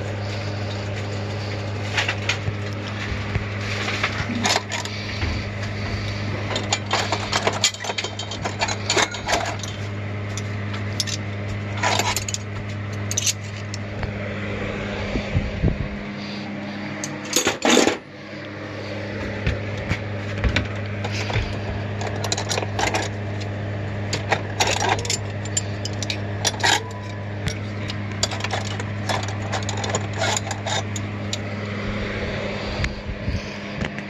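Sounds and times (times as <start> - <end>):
steady low hum: 0.0 - 34.0
metal tools clattering: 3.7 - 13.8, 17.0 - 18.0, 20.8 - 23.2, 24.1 - 31.4.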